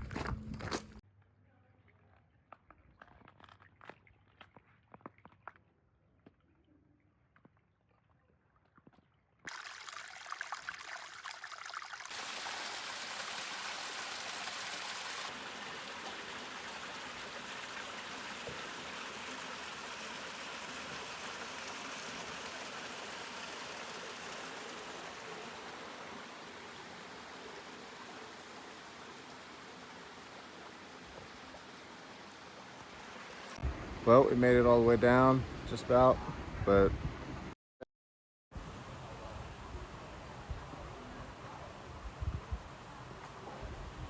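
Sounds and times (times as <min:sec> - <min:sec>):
stream water running over rocks: 0:09.5 - 0:36.8.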